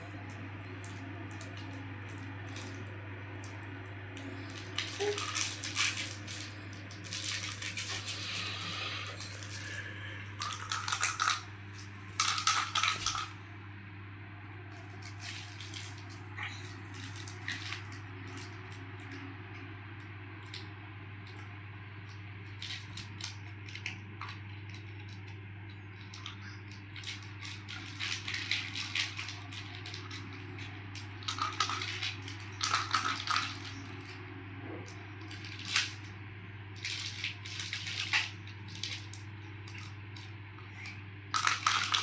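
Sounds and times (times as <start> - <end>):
steady low hum: 0.0 - 42.0
small hard objects clattering: 4.4 - 8.3, 10.4 - 11.4, 26.0 - 34.0, 41.3 - 42.0.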